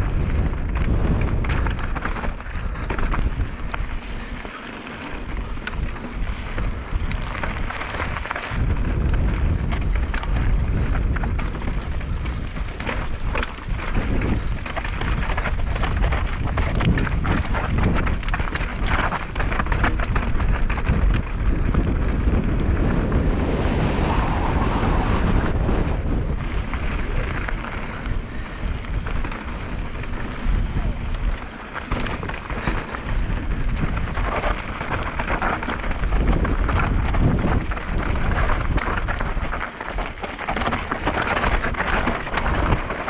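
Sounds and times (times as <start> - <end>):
tyres rolling over dirt: 0.0 - 24.7, 25.3 - 43.0
bike rattling over bumps: 0.0 - 43.0
wind rumbling on microphone: 0.0 - 43.0.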